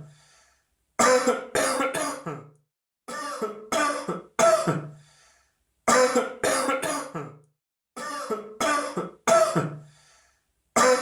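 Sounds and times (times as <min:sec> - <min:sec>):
person coughing harshly: 0:01.0 - 0:05.0, 0:05.9 - 0:07.4, 0:08.0 - 0:09.9, 0:10.8 - 0:11.0.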